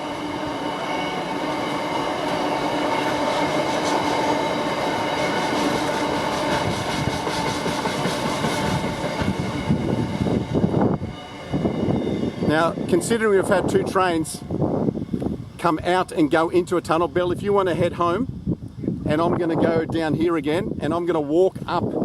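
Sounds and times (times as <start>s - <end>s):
freight train rumbling: 0.0s - 17.3s.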